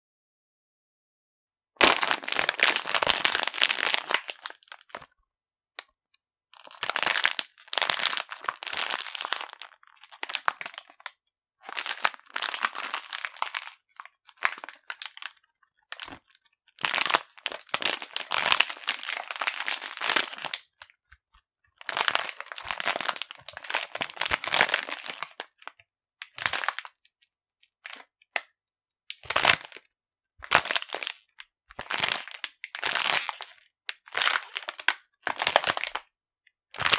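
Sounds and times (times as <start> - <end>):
crackling crinkling noise: 11.8 - 27.0.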